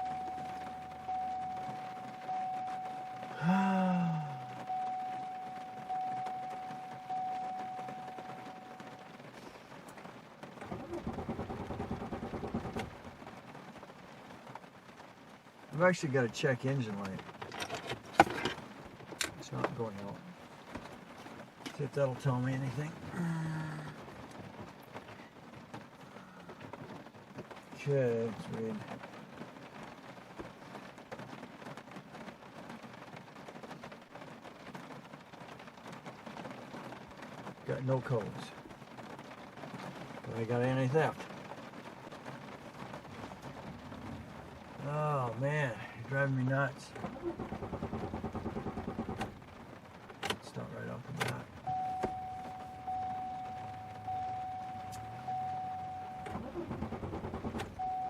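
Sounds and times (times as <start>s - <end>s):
steady warning tone: 0.0s - 9.2s, 51.6s - 58.0s
steady rain pattering: 0.0s - 58.0s
starter cranking engine: 10.6s - 13.0s, 47.0s - 49.4s, 56.2s - 58.0s.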